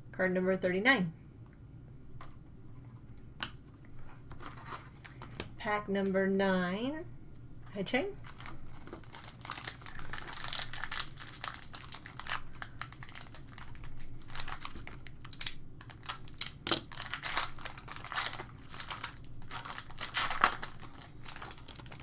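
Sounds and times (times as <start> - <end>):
card pack wrapper crinkling: 8.2 - 22.0.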